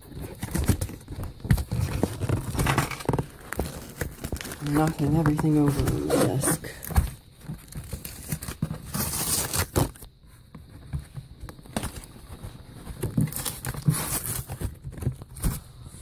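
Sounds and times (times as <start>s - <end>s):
cardboard rustling: 0.0s - 16.0s
tape tearing off cardboard box: 7.6s - 10.1s, 13.2s - 14.8s.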